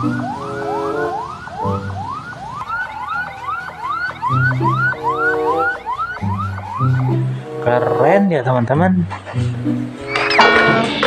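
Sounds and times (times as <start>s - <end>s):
ambulance siren yelping: 0.0s - 8.2s, 9.1s - 10.4s
background music with pulsing beat: 1.6s - 8.2s, 9.0s - 11.0s.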